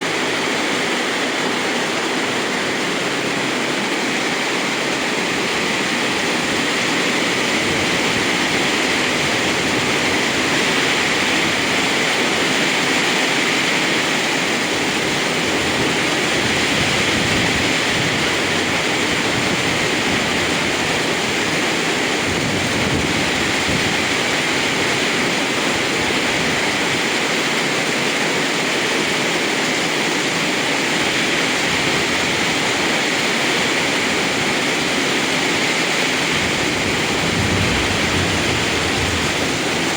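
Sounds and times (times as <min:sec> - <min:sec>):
rain falling steadily: 0:00.0 - 0:39.9.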